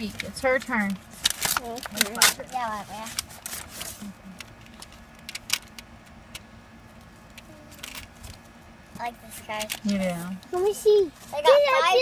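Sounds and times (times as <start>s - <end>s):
greeting card rustling: 0.0s - 12.0s
steady low hum: 0.0s - 12.0s
paper envelope tearing: 1.1s - 4.2s.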